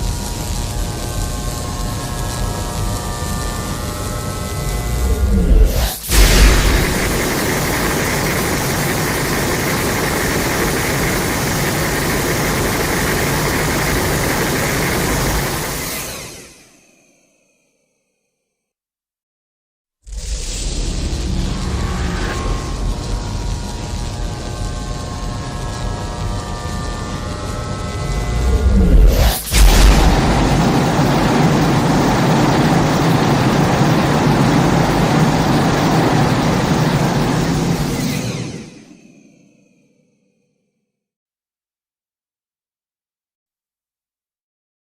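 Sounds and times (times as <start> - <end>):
low hum: 4.0 - 15.7, 25.0 - 37.9
loud dense broadband noise: 4.4 - 15.6
dense rushing rumble: 4.7 - 9.6, 28.1 - 37.5
sudden loud blast: 4.8 - 9.3, 28.1 - 33.0.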